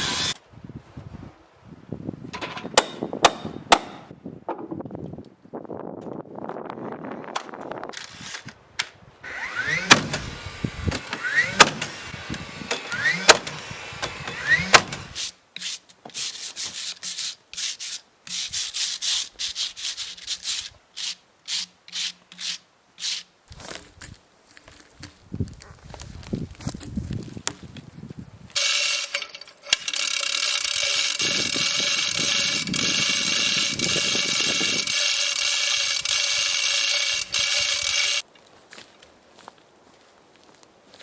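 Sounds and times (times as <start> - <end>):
rasping strokes on wood: 14.4 - 23.3.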